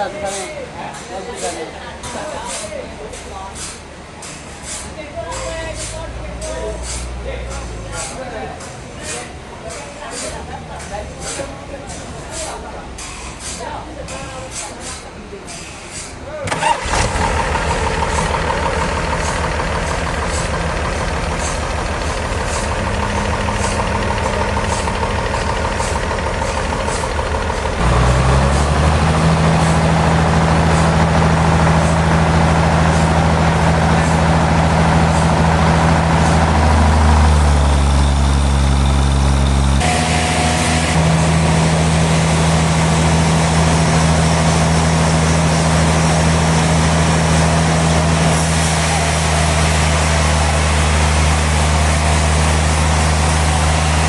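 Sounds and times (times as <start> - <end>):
light regular engine ticking: 16.5 - 39.8
engine idling and revving: 16.5 - 54.0.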